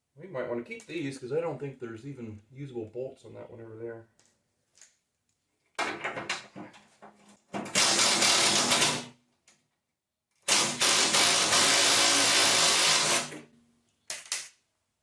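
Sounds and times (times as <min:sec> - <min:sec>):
power driver running: 0:10.5 - 0:13.4
tool and socket clicks and rattles: 0:14.1 - 0:14.6.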